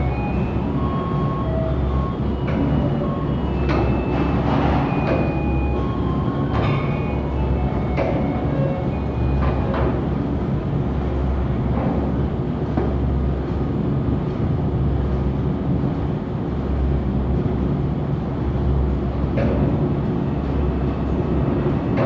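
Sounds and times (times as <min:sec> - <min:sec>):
machine hum and rumble: 0:00.0 - 0:22.0.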